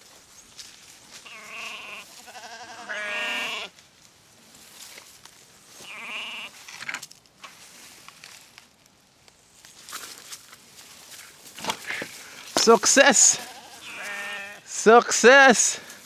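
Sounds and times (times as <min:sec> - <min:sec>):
sheep bleating: 0:01.2 - 0:03.7, 0:05.8 - 0:06.6, 0:12.6 - 0:16.0
rustles and clicks: 0:09.7 - 0:14.2.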